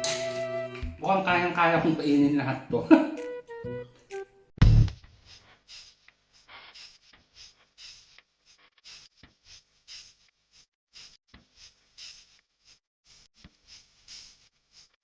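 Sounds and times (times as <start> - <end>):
low thump: 4.6 - 5.0.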